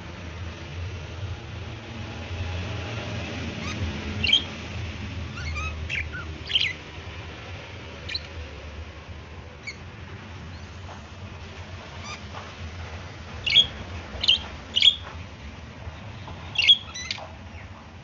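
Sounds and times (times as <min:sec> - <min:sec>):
budgerigars chirping: 0:03.6 - 0:04.6, 0:05.3 - 0:07.0, 0:08.0 - 0:08.4, 0:13.4 - 0:15.1, 0:16.2 - 0:17.7.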